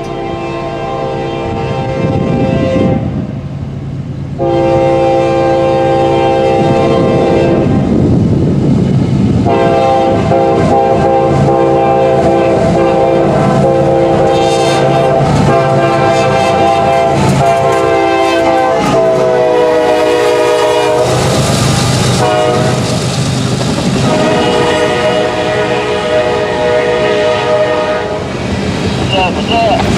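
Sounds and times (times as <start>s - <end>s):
locomotive air horn blasts: 0.0s - 3.2s, 4.4s - 7.9s, 9.4s - 21.3s, 22.2s - 23.0s, 24.0s - 28.2s
rush of passing train: 0.0s - 29.9s.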